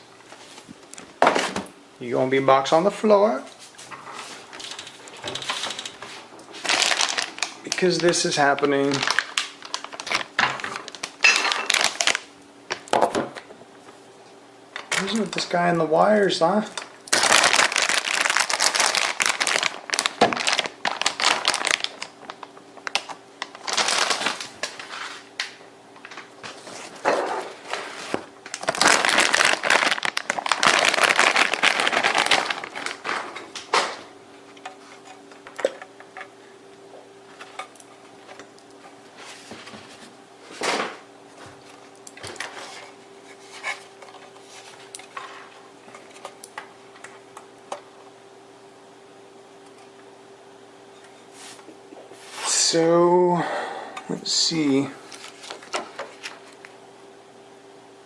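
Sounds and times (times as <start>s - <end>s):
steady low hum: 0.0s - 58.0s
packaging rustling and crinkling: 4.1s - 12.3s, 16.8s - 25.4s, 26.0s - 35.2s, 54.5s - 56.7s.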